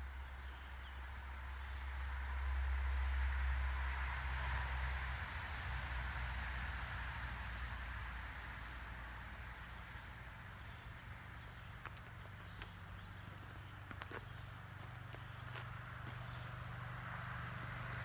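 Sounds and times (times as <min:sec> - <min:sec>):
insect trilling: 0:09.5 - 0:18.0.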